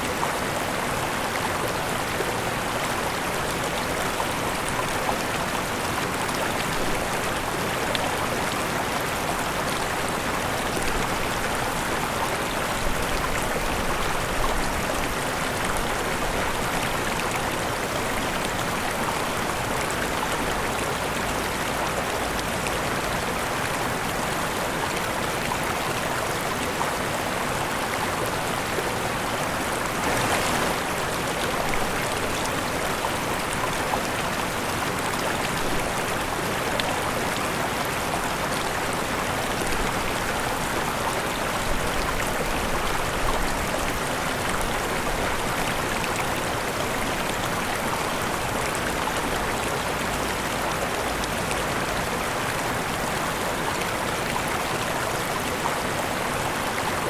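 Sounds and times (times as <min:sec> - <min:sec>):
waterfall rushing: 0:26.3 - 0:57.0.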